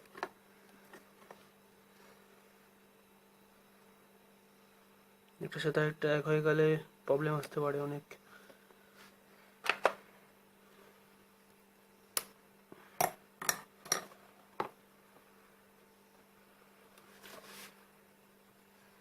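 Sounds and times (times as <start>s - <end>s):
faint steady hum: 0.0s - 19.0s
soft rustle: 17.0s - 17.9s.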